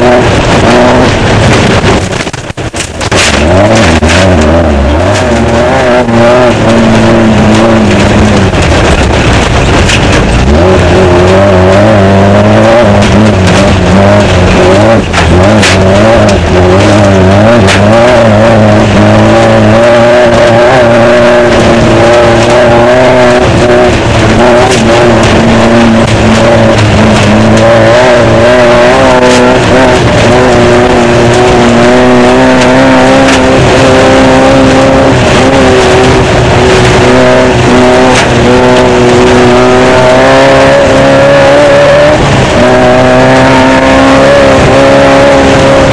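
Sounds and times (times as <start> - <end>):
car rattling over terrain: 0.0 - 45.9
race car engine revving: 0.0 - 45.9.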